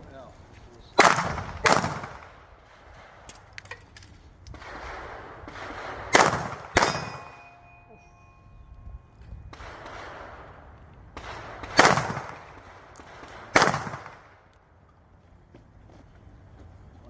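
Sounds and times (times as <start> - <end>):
pistol shots: 1.0 - 3.9, 4.5 - 7.6, 9.4 - 14.5
steel target ringing: 6.7 - 9.2.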